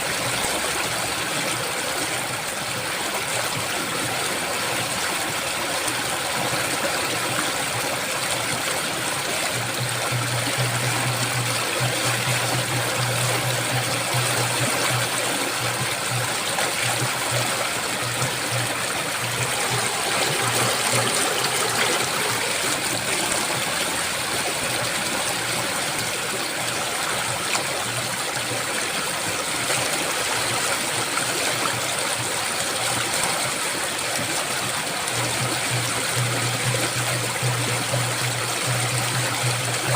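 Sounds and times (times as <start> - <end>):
river water rushing: 0.0 - 39.9
low hum: 9.5 - 25.1, 35.1 - 39.9.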